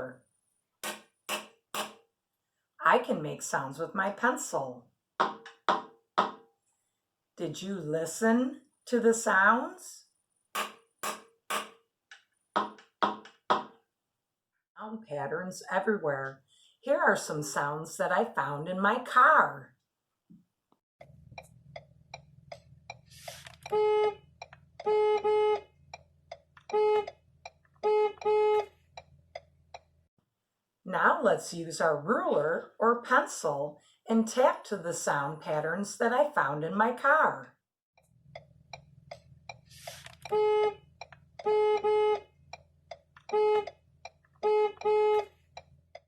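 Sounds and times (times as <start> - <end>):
car horn honking: 10.6 - 11.7, 23.7 - 24.2, 24.8 - 25.6, 26.7 - 27.1, 27.8 - 28.7, 40.3 - 40.8, 41.4 - 42.2, 43.3 - 43.7, 44.4 - 45.3
low car hum: 21.0 - 30.0, 38.1 - 46.0
turn signal ticking: 21.0 - 30.0, 38.0 - 46.0.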